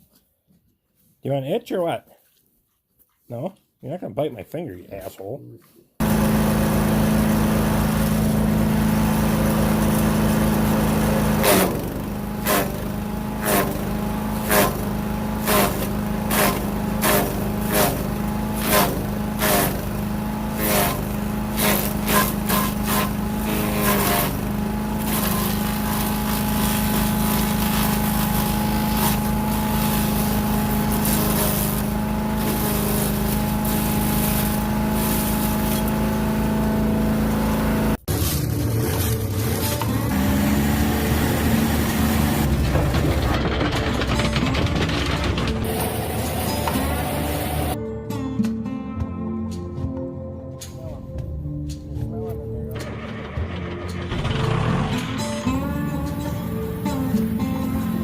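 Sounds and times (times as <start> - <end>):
wood chipper engine running: 6.0 - 47.8, 52.6 - 58.0
branches cracking in chipper: 7.9 - 36.3, 38.1 - 47.7.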